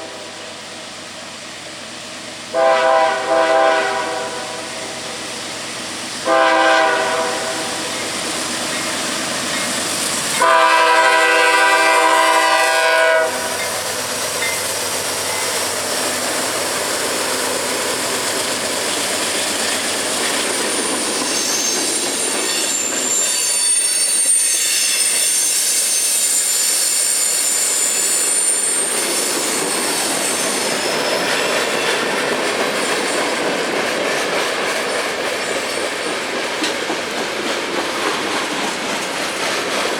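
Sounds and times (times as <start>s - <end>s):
train cars rumbling and clacking: 0.0s - 39.9s
locomotive air horn: 2.5s - 5.0s, 6.2s - 7.8s, 10.4s - 13.7s
wheel squeal: 18.3s - 33.4s.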